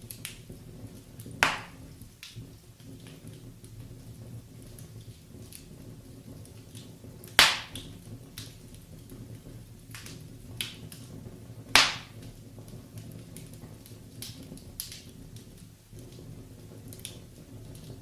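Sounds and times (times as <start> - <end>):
wood fire crackling: 0.0 - 18.0
loud sharp pops: 1.3 - 2.4, 7.3 - 8.5, 11.7 - 12.4.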